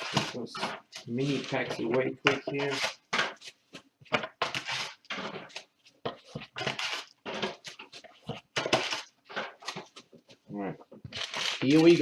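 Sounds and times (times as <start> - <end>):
wrappers being torn and crinkled: 11.1 - 12.0.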